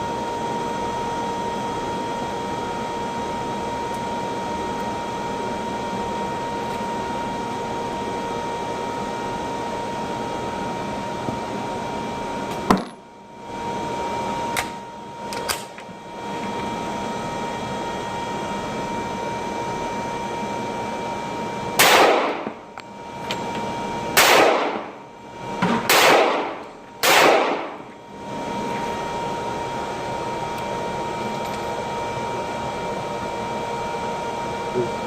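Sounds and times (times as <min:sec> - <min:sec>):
faint constant hum: 0:00.0 - 0:35.0
echoing gunshots: 0:21.8 - 0:22.5, 0:24.2 - 0:24.9, 0:25.9 - 0:27.8.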